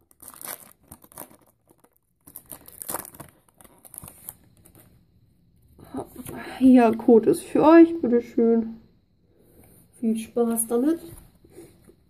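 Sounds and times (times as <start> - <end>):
foil wrapper crinkling and tearing: 0.0 - 4.8.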